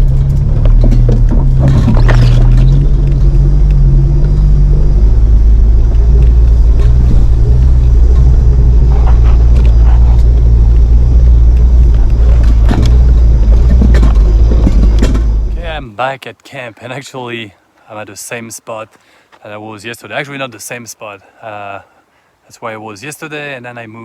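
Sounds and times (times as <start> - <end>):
vehicle knocking over bumps: 0.0 - 15.8
vehicle engine and tires rumbling: 0.0 - 16.0.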